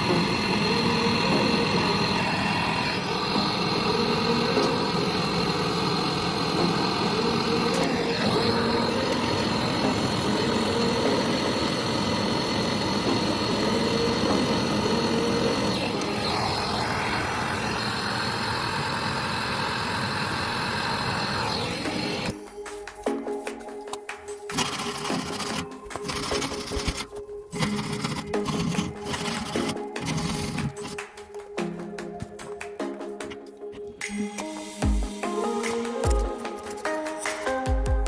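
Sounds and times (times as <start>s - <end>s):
machine motor humming and whining: 0.0s - 22.4s, 24.5s - 31.1s.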